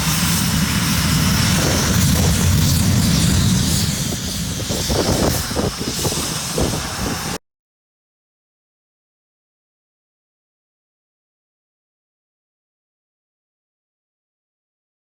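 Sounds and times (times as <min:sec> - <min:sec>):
jet engines roaring: 0:00.0 - 0:07.4.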